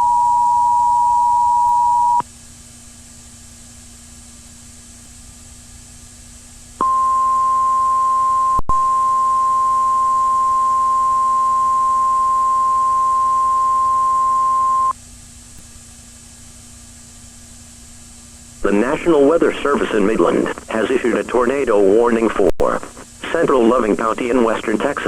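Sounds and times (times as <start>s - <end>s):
steady warning alarm tone: 0.0s - 2.2s, 6.8s - 14.9s
faint hiss and hum: 1.5s - 25.0s.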